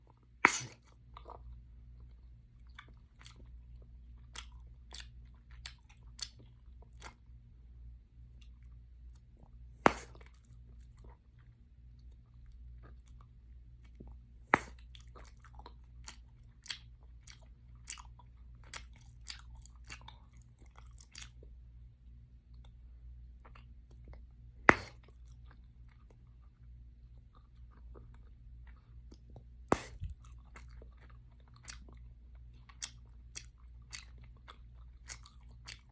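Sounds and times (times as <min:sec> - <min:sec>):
faint low hum: 0:00.0 - 0:35.9
sharp gum pops: 0:00.5 - 0:00.8, 0:09.8 - 0:10.2, 0:14.5 - 0:14.8, 0:24.7 - 0:25.0, 0:29.7 - 0:30.1
gum chewing wet clicks: 0:13.9 - 0:21.4.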